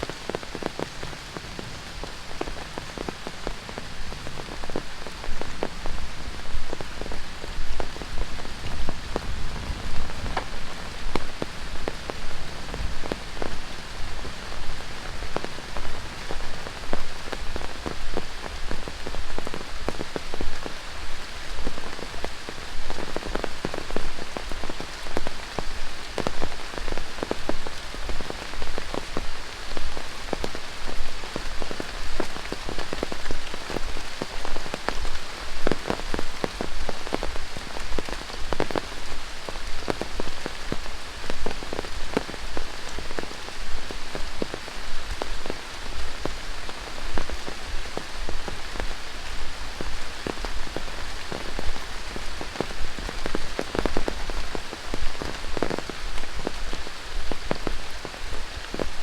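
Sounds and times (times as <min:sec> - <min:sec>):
rain hissing: 0:00.0 - 0:59.0
sharp raindrop impacts: 0:06.6 - 0:13.7.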